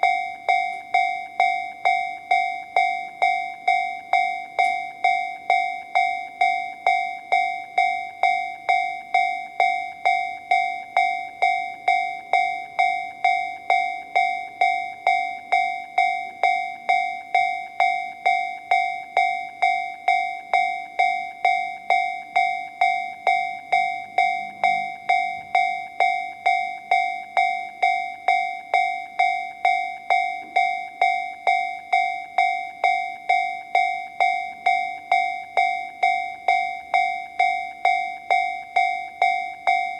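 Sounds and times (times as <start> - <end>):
electronic bell-like dings: 0.0 - 39.9.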